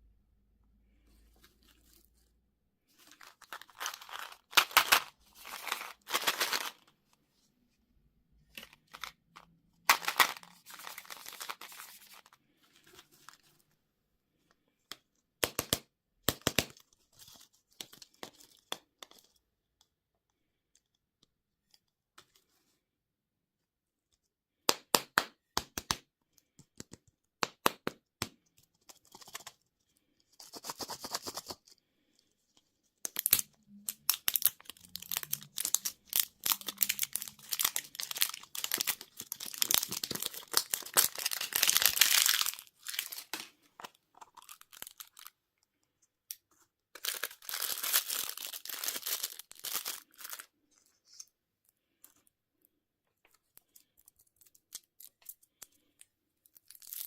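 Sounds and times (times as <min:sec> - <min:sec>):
candy wrappers crinkling: 0:02.9 - 0:07.0, 0:08.4 - 0:13.5, 0:33.0 - 0:45.4, 0:46.3 - 0:51.7, 0:53.4 - 0:57.0.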